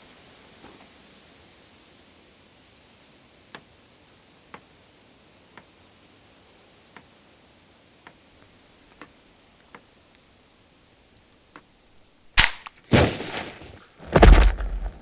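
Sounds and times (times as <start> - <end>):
faint ticks: 4.5 - 4.7, 5.5 - 5.8, 6.9 - 7.1, 8.0 - 10.3
sharp crack: 12.0 - 15.0
loud crash: 12.9 - 15.0
heavy bass impact: 14.1 - 15.0.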